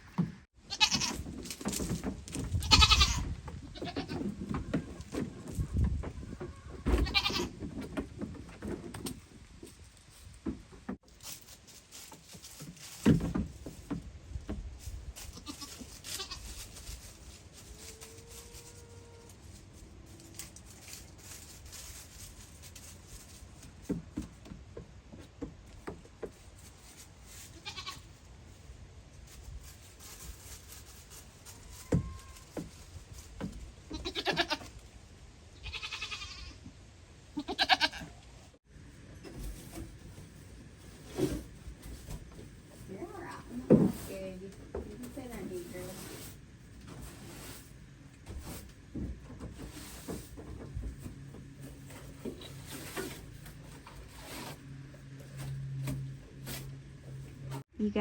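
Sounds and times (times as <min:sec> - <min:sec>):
goats bleating: 0:00.7 - 0:01.1, 0:33.9 - 0:34.6, 0:35.6 - 0:36.5, 0:37.4 - 0:38.1.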